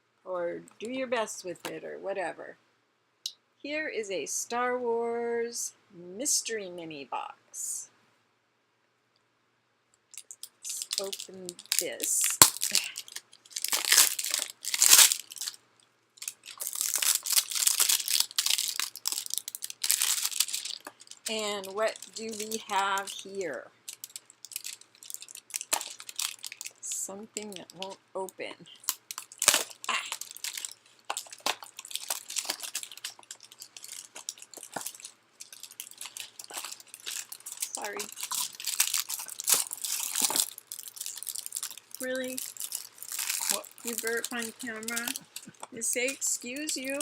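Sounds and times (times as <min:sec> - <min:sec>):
packaging tearing and crinkling: 0:10.2 - 0:15.6, 0:16.2 - 0:26.9, 0:28.8 - 0:47.0.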